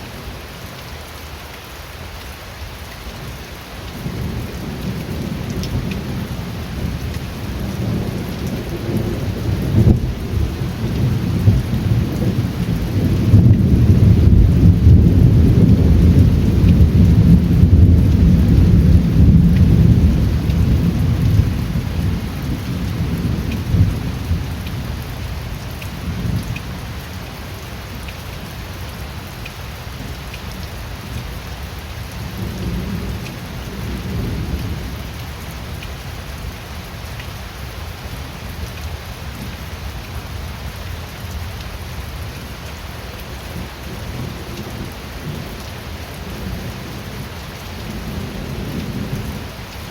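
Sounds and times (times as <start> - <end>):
steady rain: 0.0 - 49.9
thunder rumbling: 4.0 - 25.0.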